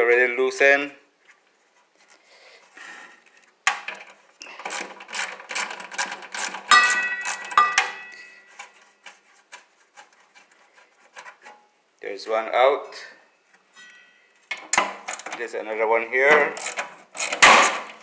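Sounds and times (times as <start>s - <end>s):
hand tool metal clicks and scraping: 3.8s - 11.6s, 13.8s - 15.4s, 16.3s - 18.0s
metallic ringing squeak: 6.7s - 8.6s, 13.7s - 14.4s.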